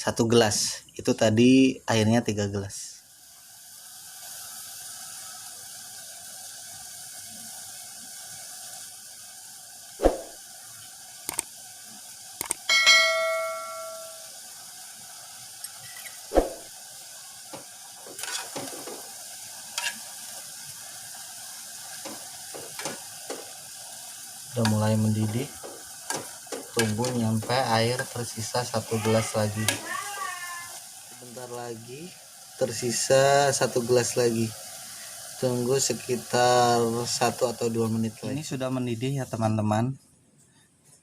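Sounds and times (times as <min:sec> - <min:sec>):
water hissing in a pot: 0:00.2 - 0:40.0
short ringing tone: 0:12.7 - 0:14.4.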